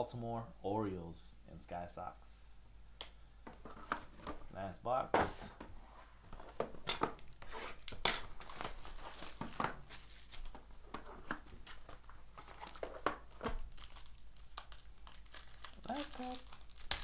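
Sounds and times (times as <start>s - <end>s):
plastic wrapping crinkling and tearing: 7.7s - 10.6s, 11.3s - 17.0s.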